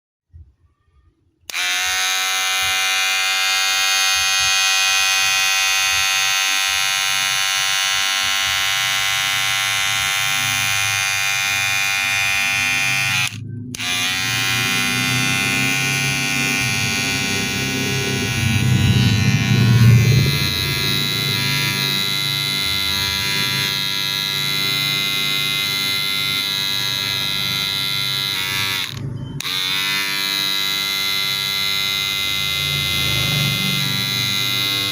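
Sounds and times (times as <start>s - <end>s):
hair clipper buzzing: 1.5s - 34.9s.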